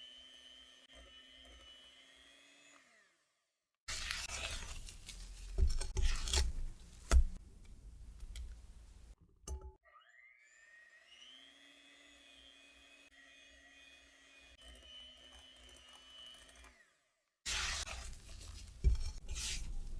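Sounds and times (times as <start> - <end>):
dough mixing in a bowl: 17.5 - 19.9.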